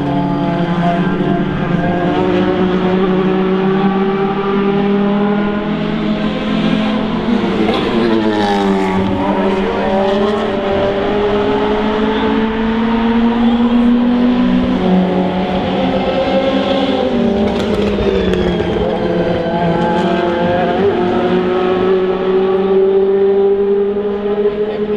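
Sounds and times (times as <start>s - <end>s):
race car engines running: 0.0s - 24.9s.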